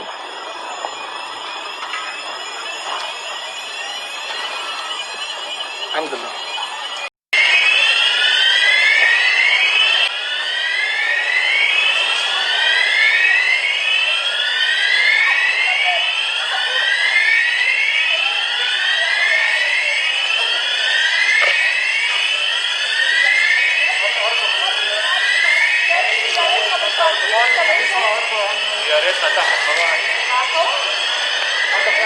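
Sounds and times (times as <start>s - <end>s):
electronic alarm rising sweep: 0.0s - 32.0s.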